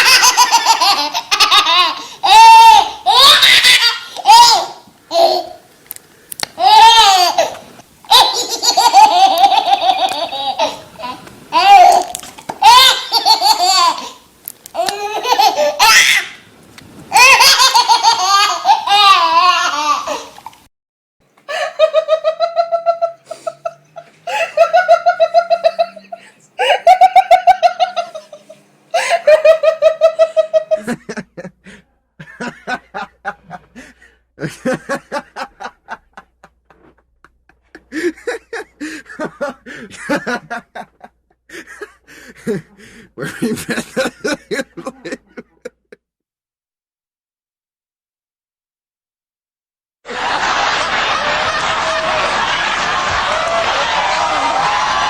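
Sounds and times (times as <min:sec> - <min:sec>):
rhythmic ha-ha laughter: 0:00.0 - 0:02.6, 0:21.5 - 0:46.0, 0:50.1 - 0:55.0
high wavering laughter: 0:08.1 - 0:11.2, 0:21.5 - 0:46.0, 0:50.1 - 0:55.0
low pulsing chuckle: 0:23.0 - 0:27.1.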